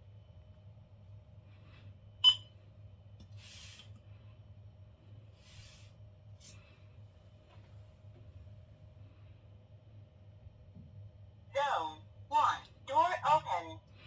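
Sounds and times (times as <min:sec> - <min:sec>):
faint steady hum: 0:00.0 - 0:14.0
soft brushing noises: 0:05.4 - 0:06.7.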